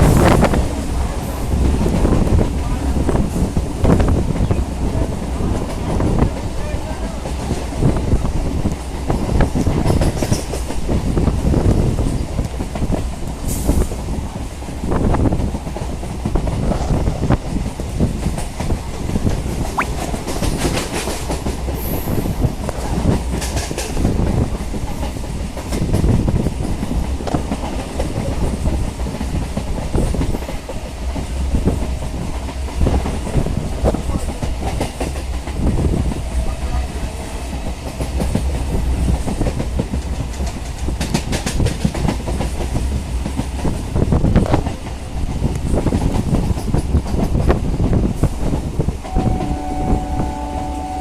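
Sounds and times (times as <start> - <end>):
train rumble from on board: 0.0 - 51.0.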